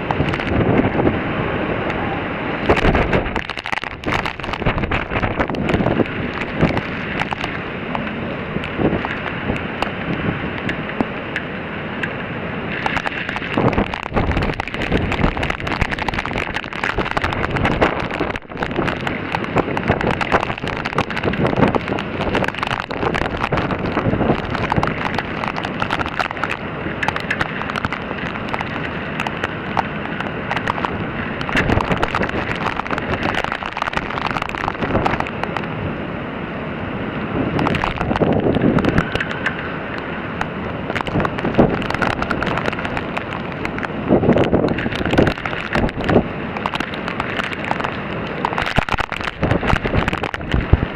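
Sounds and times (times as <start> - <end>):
rain falling: 0.0 - 50.9
wind buffeting microphone: 0.0 - 50.9.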